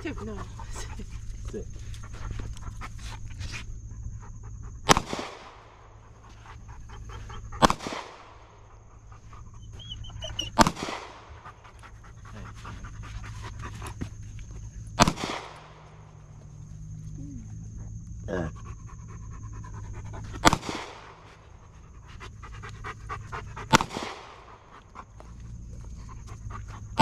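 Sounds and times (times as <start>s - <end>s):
dog panting: 0.0s - 4.9s, 6.0s - 7.8s, 8.6s - 14.8s, 17.5s - 27.0s
gunshots with ringing echo: 4.9s - 6.0s, 7.6s - 8.6s, 10.6s - 11.4s, 15.0s - 16.2s, 20.4s - 21.3s, 23.7s - 24.6s.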